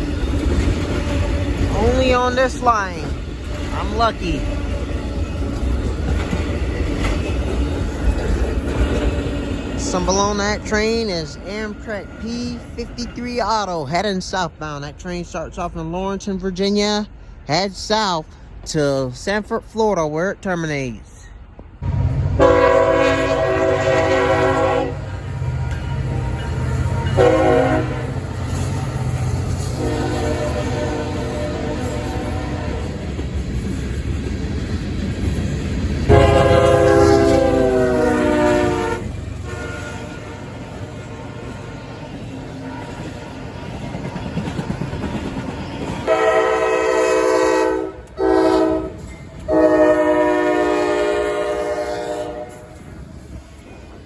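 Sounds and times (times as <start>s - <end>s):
train rumbling past: 0.0s - 54.0s
locomotive horn blasts: 22.4s - 25.2s, 25.8s - 28.2s, 29.8s - 33.0s, 36.1s - 41.7s, 46.1s - 52.7s.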